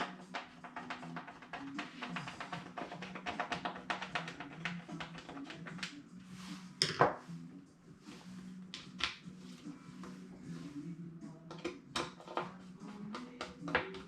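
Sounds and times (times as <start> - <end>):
clicks and taps handling a wing: 0.0 - 6.0.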